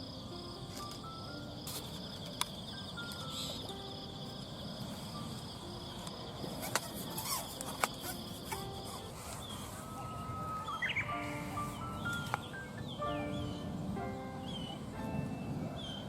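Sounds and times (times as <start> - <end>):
insect trilling: 0.0 - 12.6.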